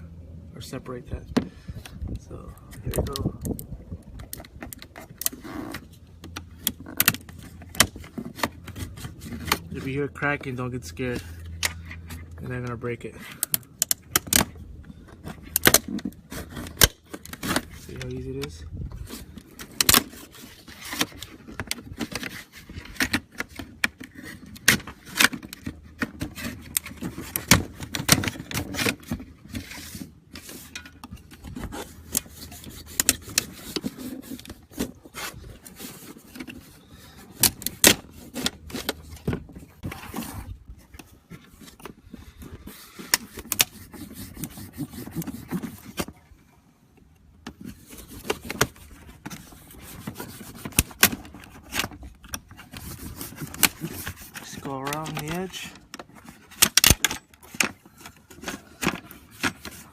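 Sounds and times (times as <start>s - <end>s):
spatula scraping plastic: 15.1s - 46.3s, 47.5s - 59.9s.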